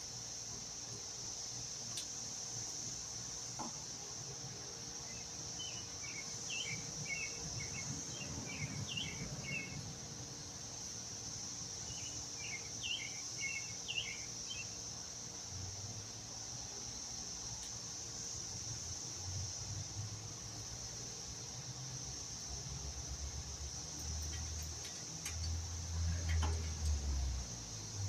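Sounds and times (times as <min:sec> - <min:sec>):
high insect drone: 0:00.0 - 0:28.0
bird chirping: 0:05.1 - 0:09.8, 0:11.9 - 0:14.8.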